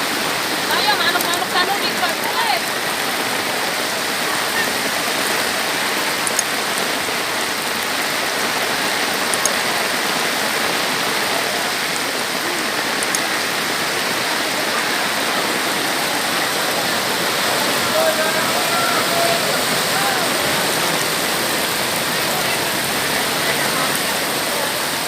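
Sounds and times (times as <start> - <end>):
heavy rain hissing: 0.0 - 25.0
faint ticks of drops: 6.2 - 6.8.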